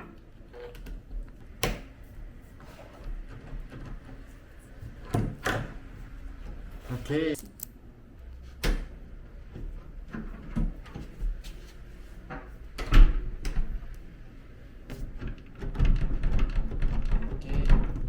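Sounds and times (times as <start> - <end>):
rattling and knocking: 15.2 - 18.0.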